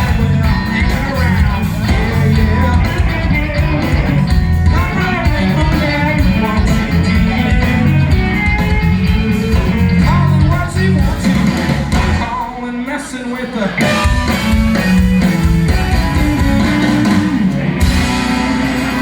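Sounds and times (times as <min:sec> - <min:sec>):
person singing: 0:00.0 - 0:08.4
electric guitar lead with bends: 0:00.0 - 0:12.4, 0:13.8 - 0:19.0
bass and drums: 0:00.0 - 0:19.0.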